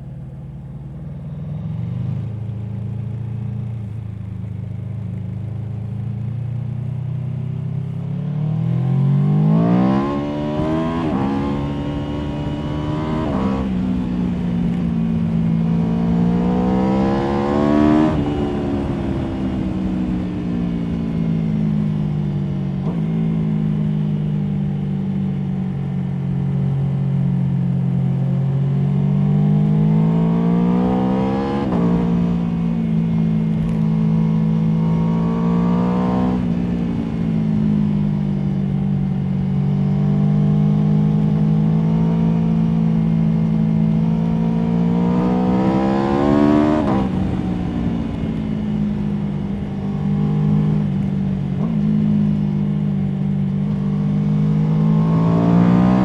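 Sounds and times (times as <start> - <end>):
motorcycle engine revving through gears: 0.0 - 56.0.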